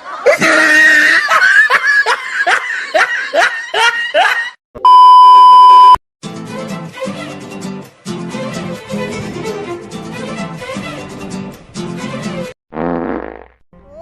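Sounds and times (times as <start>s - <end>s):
loud laughter: 0.0s - 4.6s
censor bleep tone: 4.8s - 6.0s.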